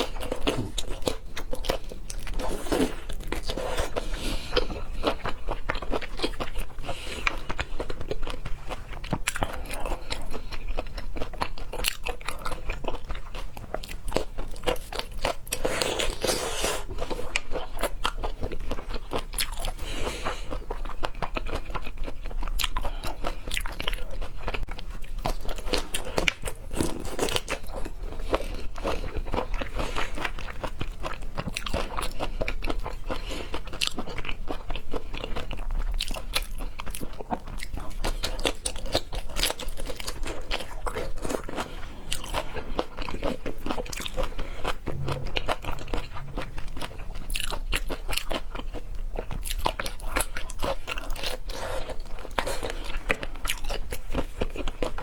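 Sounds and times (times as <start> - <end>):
chewing and crunching: 0.0 - 55.0.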